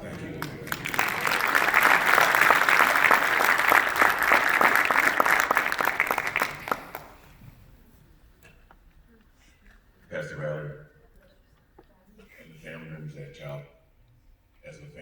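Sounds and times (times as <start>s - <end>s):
congregation applauding: 0.0s - 7.4s.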